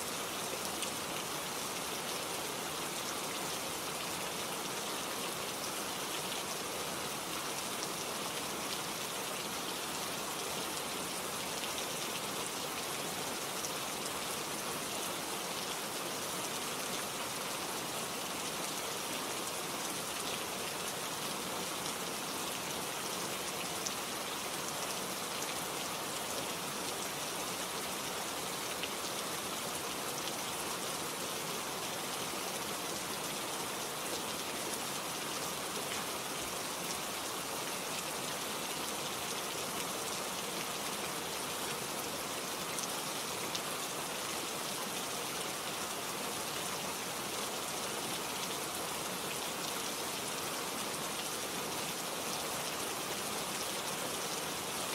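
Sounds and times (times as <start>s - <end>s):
steady rainfall hiss: 0.0s - 54.9s.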